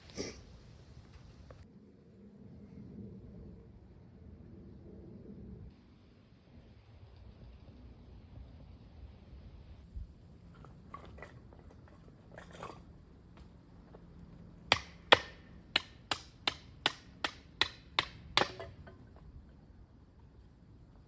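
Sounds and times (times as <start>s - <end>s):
low wind rumble: 0.0s - 16.1s
wood splitting strikes: 14.7s - 19.1s.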